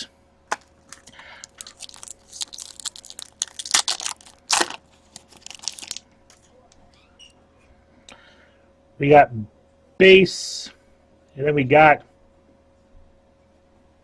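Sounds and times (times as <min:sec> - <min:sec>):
plastic wrapper tearing and crinkling: 0:00.9 - 0:06.4.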